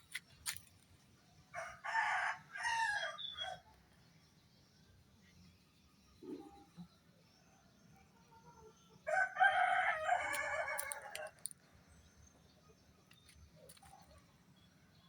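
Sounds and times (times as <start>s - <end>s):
rooster crowing: 9.1s - 11.4s
faint clicks: 10.3s - 11.7s.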